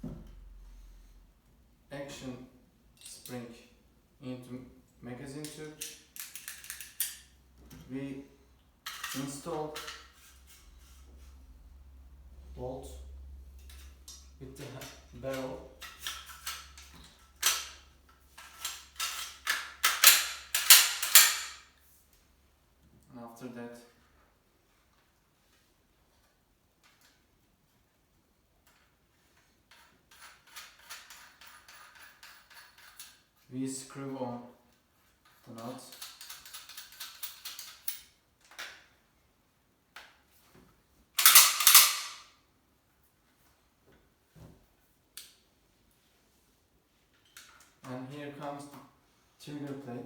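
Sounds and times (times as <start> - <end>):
shotgun parts clacking: 5.4 - 7.3, 8.8 - 10.1, 18.4 - 21.6, 41.2 - 42.3
small metal clicks: 5.4 - 7.3, 13.6 - 21.6.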